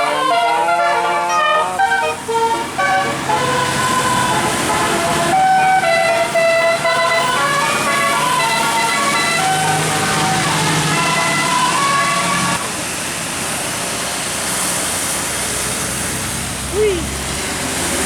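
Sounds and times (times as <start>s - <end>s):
musical bus horn playing a tune: 0.0s - 12.7s.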